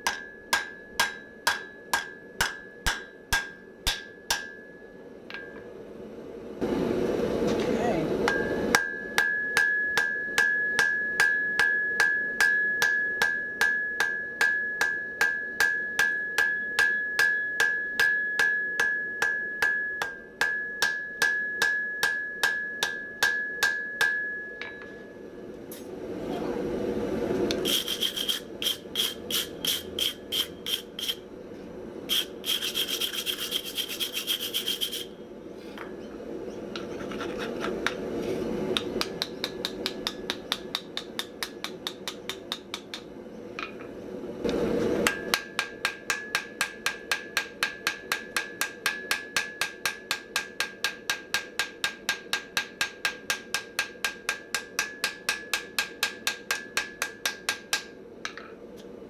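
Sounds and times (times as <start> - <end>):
hammer blows on ringing anvil: 0.0 - 5.8, 7.5 - 25.2, 44.5 - 58.0.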